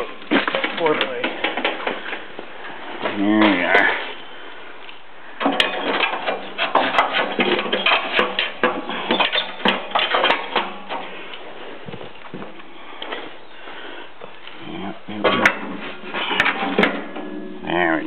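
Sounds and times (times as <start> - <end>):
hard objects clicking and rattling: 5.4 - 11.1.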